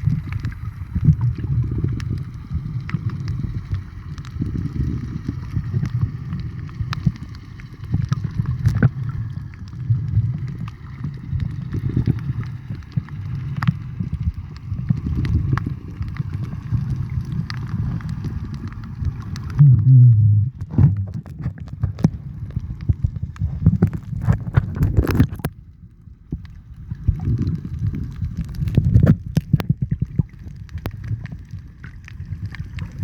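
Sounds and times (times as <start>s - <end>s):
muffled underwater water rush: 0.0s - 33.0s.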